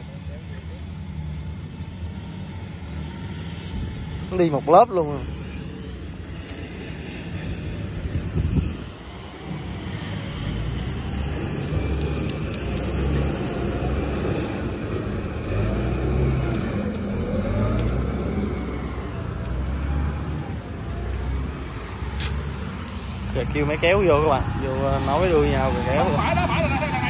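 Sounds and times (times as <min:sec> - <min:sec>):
diesel engines rumbling: 0:00.0 - 0:27.0.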